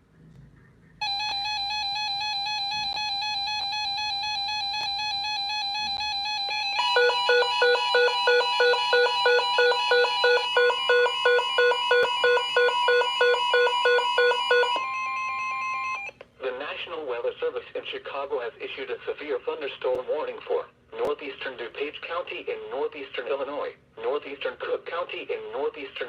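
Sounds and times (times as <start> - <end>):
electronic alarm tone: 1.0 - 16.1
fast pulsing beeps: 5.0 - 14.8.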